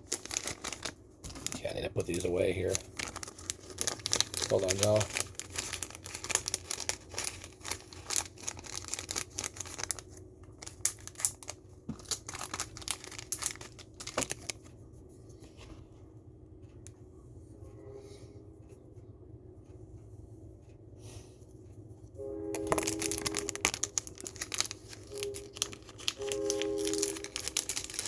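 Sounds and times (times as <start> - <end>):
packaging crinkling and rustling: 0.0 - 14.7, 22.6 - 28.0.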